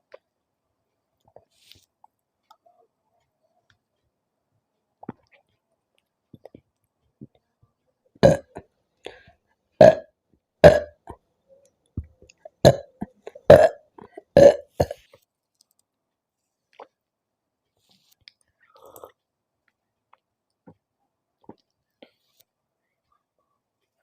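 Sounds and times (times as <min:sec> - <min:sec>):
person burping: 0:08.2 - 0:08.6, 0:09.8 - 0:11.2, 0:12.6 - 0:15.0.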